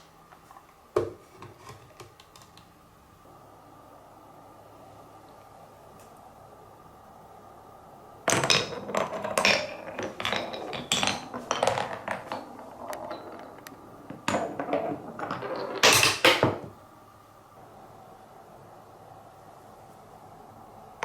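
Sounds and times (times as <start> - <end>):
marbles rolling through wooden run: 8.3 - 16.6.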